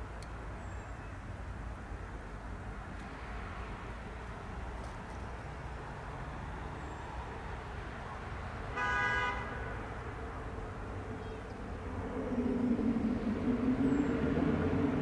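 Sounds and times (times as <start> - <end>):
turboprop engine hum: 10.0 - 15.0
noisy background: 10.2 - 15.0.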